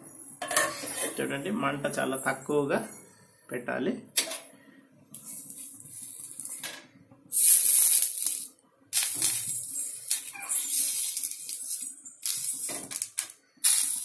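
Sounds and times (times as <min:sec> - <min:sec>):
leaves hissing on hot plate: 0:05.2 - 0:06.7, 0:07.3 - 0:14.0.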